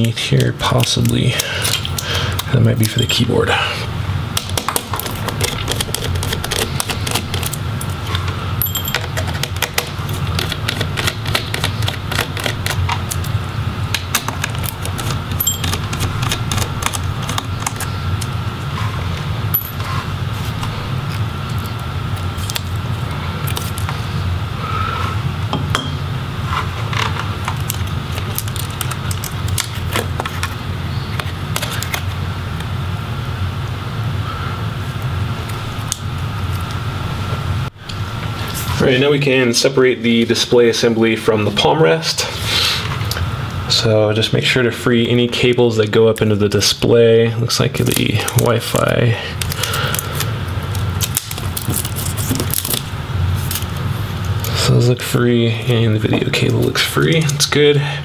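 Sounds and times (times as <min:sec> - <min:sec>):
steady low hum: 0:00.0 - 0:58.0
laptop parts clicking and rattling: 0:04.4 - 0:07.6, 0:08.6 - 0:13.3, 0:14.0 - 0:17.9.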